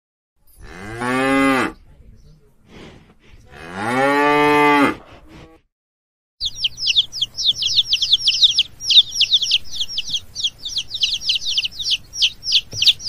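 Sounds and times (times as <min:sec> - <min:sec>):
chicks peeping: 0:06.4 - 0:13.0.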